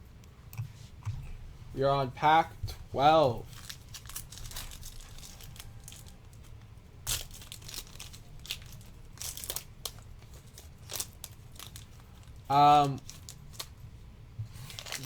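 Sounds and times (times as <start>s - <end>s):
cards being handled: 2.6s - 13.8s, 14.5s - 15.0s
wrapper crinkling and tearing: 3.0s - 13.9s, 14.6s - 15.0s.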